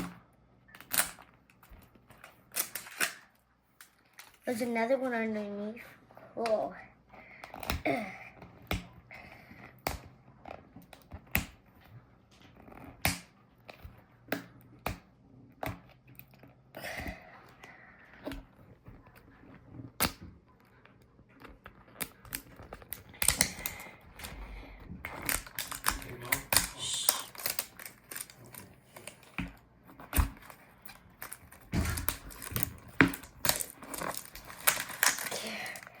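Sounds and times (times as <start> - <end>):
plastic packaging clicks and taps: 10.8 - 11.6, 13.0 - 16.4, 25.1 - 26.7, 27.3 - 36.0
plastic packaging rustling: 25.2 - 29.3, 30.3 - 36.0.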